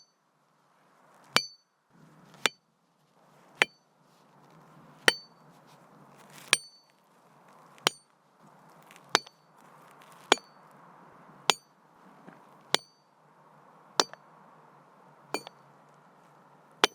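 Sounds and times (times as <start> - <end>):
hammer striking masonry: 5.1 - 5.3, 6.5 - 6.8, 9.1 - 9.4, 10.3 - 10.5, 11.5 - 11.7, 12.7 - 13.0, 14.0 - 14.2, 15.4 - 15.6.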